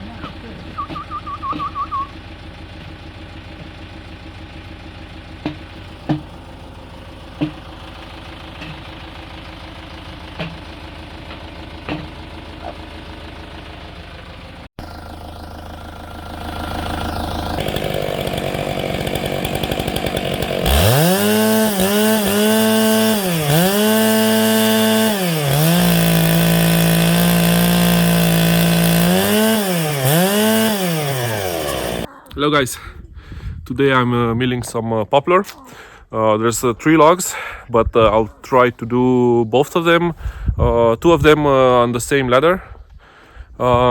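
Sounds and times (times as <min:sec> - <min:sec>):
chainsaw cutting log: 0:02.8 - 0:12.8, 0:14.8 - 0:32.1
sharp knocks: 0:05.4 - 0:06.3.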